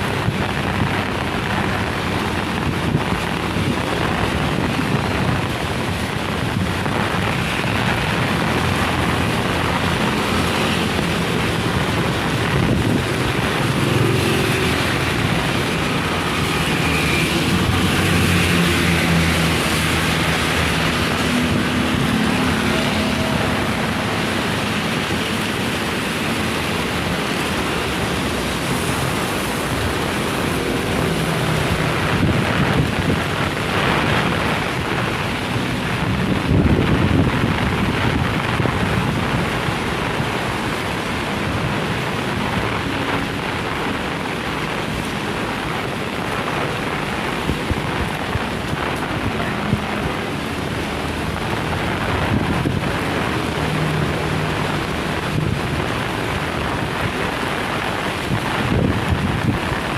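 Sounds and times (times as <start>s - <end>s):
gusting wind: 0.0s - 59.9s
heavy rain: 0.0s - 59.9s.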